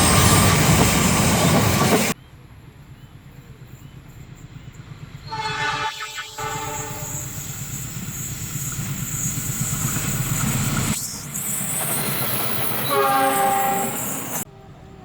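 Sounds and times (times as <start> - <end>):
engine and wheels rumbling: 0.0 - 15.0
locomotive horn chord: 5.2 - 7.3, 12.8 - 15.0.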